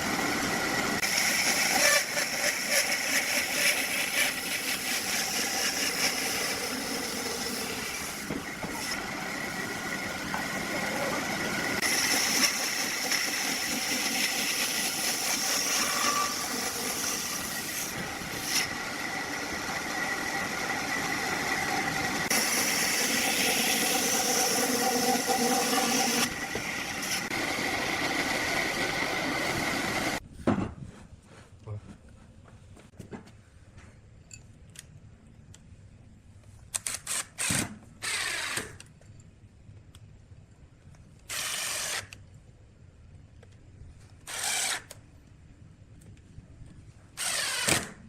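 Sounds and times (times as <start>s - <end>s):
woodworking machinery running: 0.0s - 30.2s.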